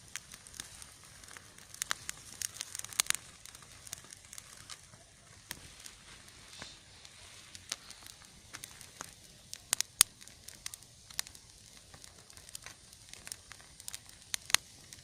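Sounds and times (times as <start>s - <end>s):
burning wood hissing: 0.0s - 15.0s
firewood crackling and popping: 0.0s - 15.0s.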